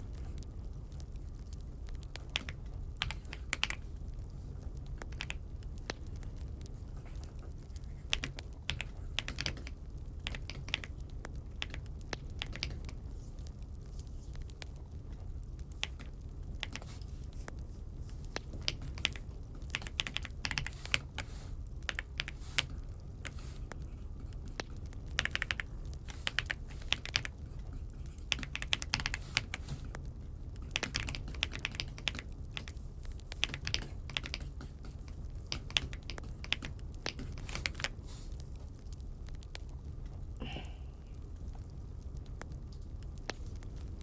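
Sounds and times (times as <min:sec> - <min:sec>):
low steady hum: 0:00.0 - 0:44.0
mechanical keyboard typing: 0:02.1 - 0:03.9, 0:04.9 - 0:06.5, 0:07.1 - 0:13.0, 0:15.7 - 0:17.1, 0:18.4 - 0:23.4, 0:24.4 - 0:30.0, 0:30.6 - 0:38.0.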